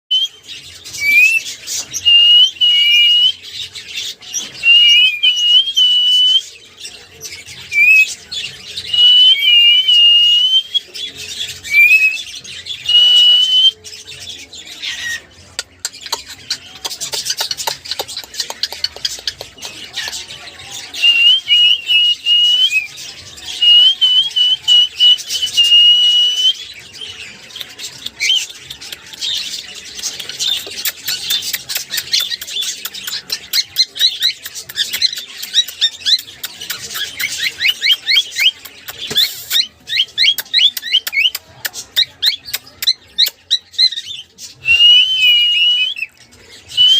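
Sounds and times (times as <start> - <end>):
bird chatter and clicks: 14.0 - 46.9.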